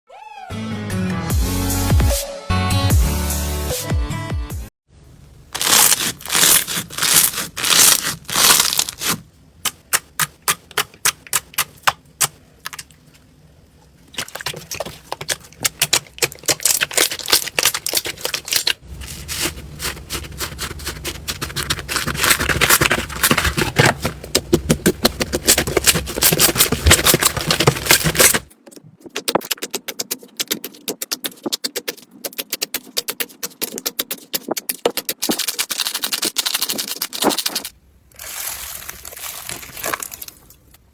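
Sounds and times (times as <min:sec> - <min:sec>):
crunchy slime crackling: 0:05.5 - 0:13.3, 0:14.0 - 0:28.5, 0:34.4 - 0:40.7.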